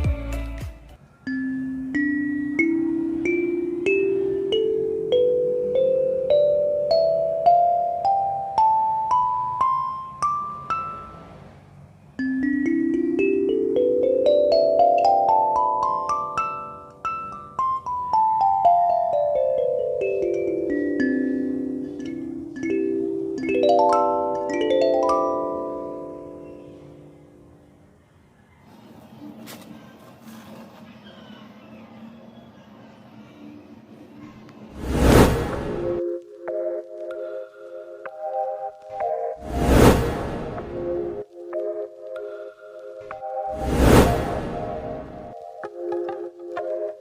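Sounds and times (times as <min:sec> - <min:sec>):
kalimba notes plucked: 0:01.3 - 0:11.3, 0:12.2 - 0:27.1.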